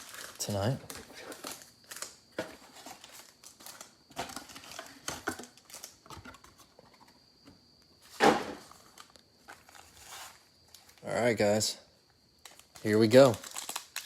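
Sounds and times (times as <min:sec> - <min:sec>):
packaging ripping: 0:00.0 - 0:06.0, 0:12.4 - 0:14.0.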